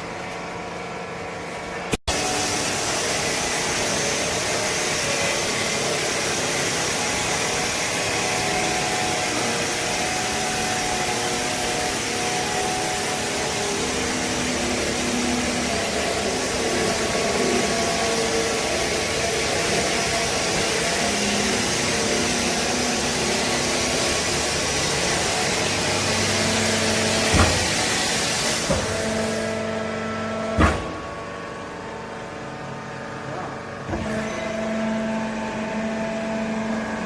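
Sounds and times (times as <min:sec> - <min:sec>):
hydraulic baling press hissing and humming: 0:01.3 - 0:37.0.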